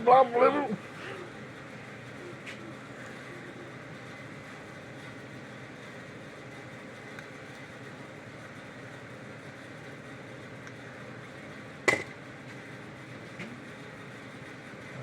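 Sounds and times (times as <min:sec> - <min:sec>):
workshop background noise: 0:11.9 - 0:12.7.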